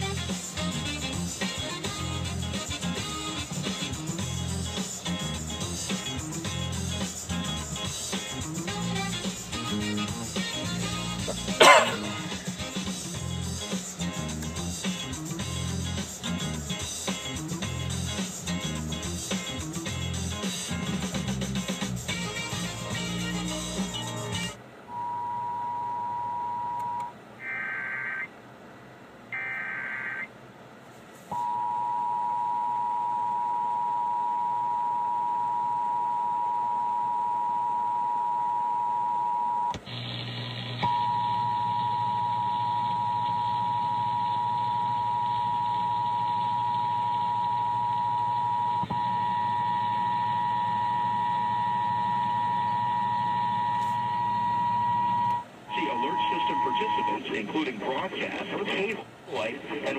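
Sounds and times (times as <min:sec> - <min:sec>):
low hum: 0:40.9 - 0:57.2
digital data bursts: 0:55.7 - 0:57.7.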